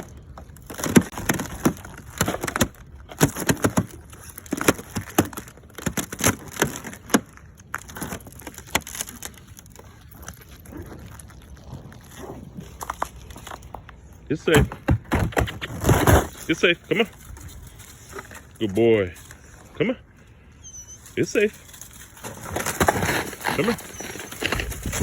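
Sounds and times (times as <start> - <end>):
footsteps crunching over twigs: 6.3 - 14.3, 20.6 - 25.0.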